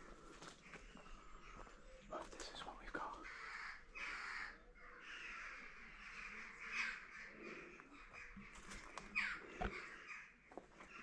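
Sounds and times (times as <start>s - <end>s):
crows cawing: 2.9s - 11.0s.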